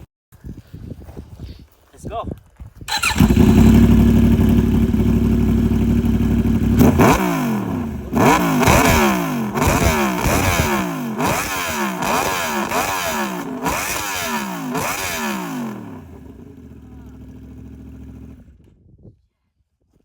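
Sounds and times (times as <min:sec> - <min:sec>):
motorcycle engine accelerating through gears: 0:02.9 - 0:18.8.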